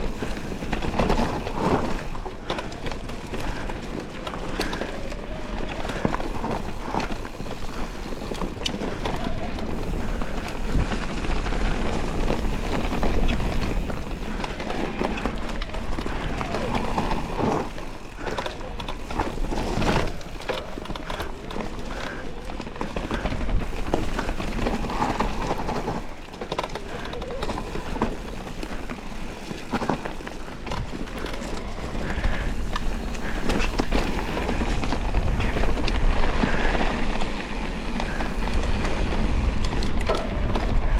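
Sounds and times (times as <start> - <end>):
bike tyre noise on dirt: 0.0 - 40.9
wind rumble on microphone: 30.9 - 40.9.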